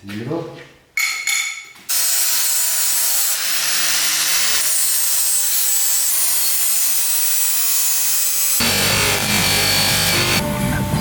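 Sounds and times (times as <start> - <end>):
grinder grinding metal rod: 1.9 - 10.5.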